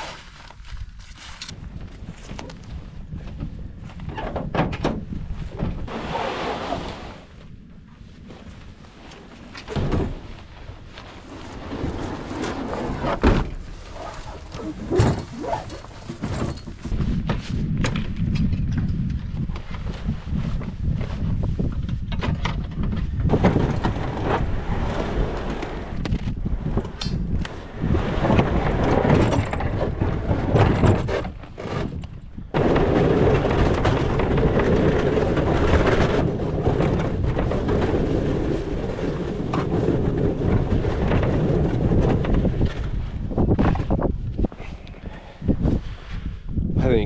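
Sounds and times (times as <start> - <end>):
footsteps crunching on snow: 0.0 - 3.2
strong wind buffeting microphone: 0.0 - 47.0.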